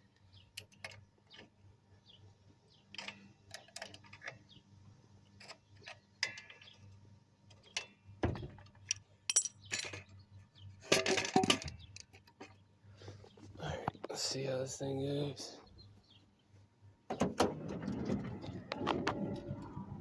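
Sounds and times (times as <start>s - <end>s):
metal rattle: 10.8s - 12.2s.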